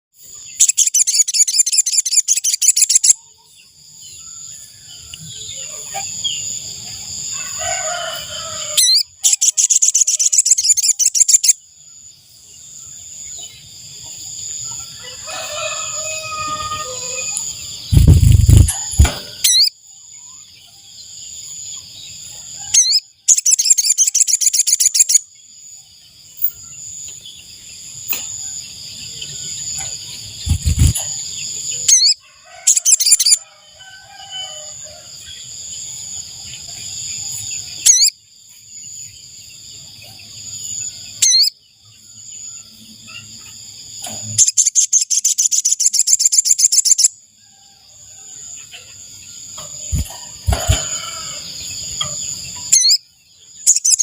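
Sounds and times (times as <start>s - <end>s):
bird trills: 0.5s - 3.3s, 8.6s - 11.6s, 16.0s - 19.7s, 22.7s - 25.2s, 31.8s - 33.4s, 37.8s - 38.1s, 41.2s - 41.5s, 52.0s - 53.0s, 53.6s - 54.0s.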